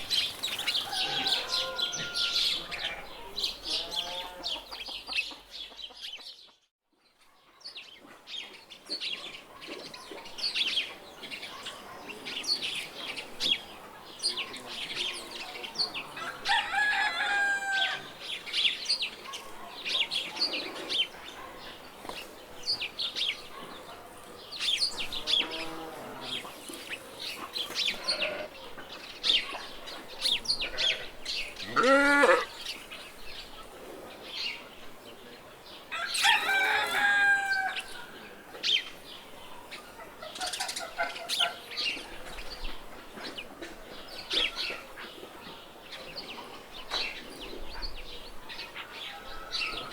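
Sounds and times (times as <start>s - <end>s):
chickens clucking: 0.0s - 6.6s, 18.0s - 31.8s, 33.4s - 49.9s
rooster crowing: 0.8s - 3.2s, 16.2s - 18.1s, 35.9s - 37.9s
small birds chirping: 18.0s - 31.8s.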